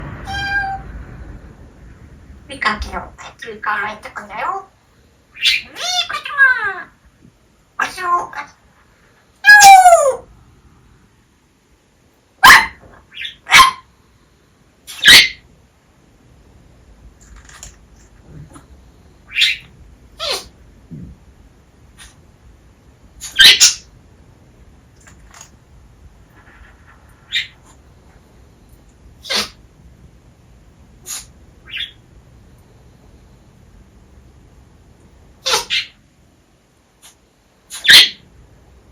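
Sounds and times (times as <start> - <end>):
parrot sneezing: 14.9 - 15.4, 20.2 - 20.5, 23.2 - 23.9, 27.3 - 27.7, 29.2 - 29.6, 31.0 - 31.9, 35.4 - 36.0, 37.0 - 38.2.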